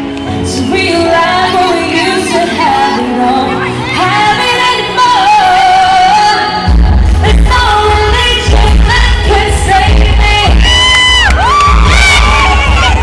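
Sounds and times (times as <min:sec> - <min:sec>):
person singing pop melody: 0:00.0 - 0:13.0.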